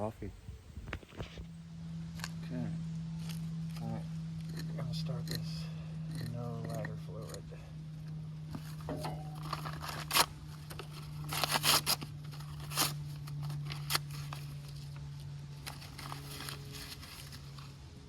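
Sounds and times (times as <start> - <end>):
steady low hum: 0.0 - 18.0
newspaper tearing and crumpling: 8.6 - 17.8.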